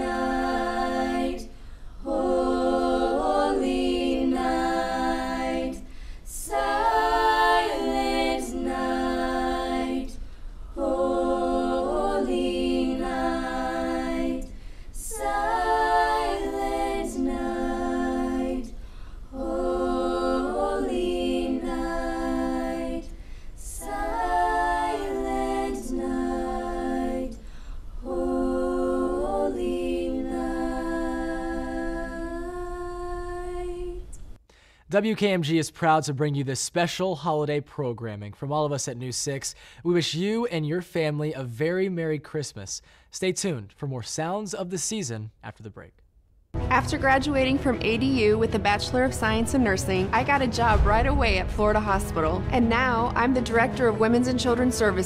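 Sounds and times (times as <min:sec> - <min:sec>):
choir singing a cappella: 0:00.0 - 0:34.4, 0:46.6 - 0:55.0.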